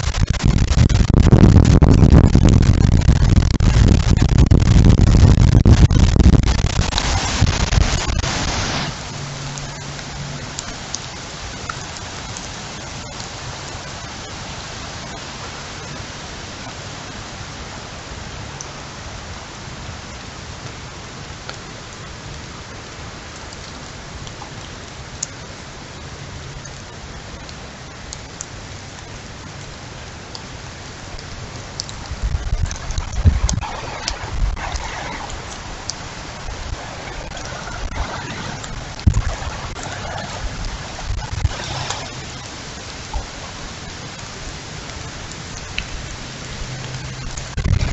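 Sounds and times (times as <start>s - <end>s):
rush of noise with deep rumble: 0.0s - 15.9s, 31.2s - 47.9s
heavy rain falling: 0.0s - 47.9s.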